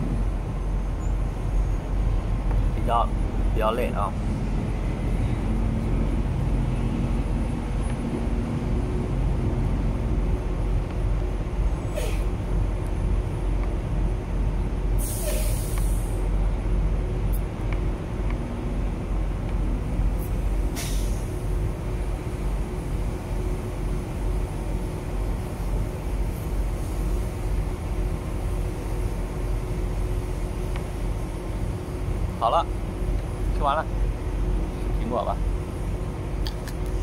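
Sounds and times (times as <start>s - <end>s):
air brake hiss: 11.9s - 12.3s, 15.0s - 16.2s, 20.7s - 21.3s.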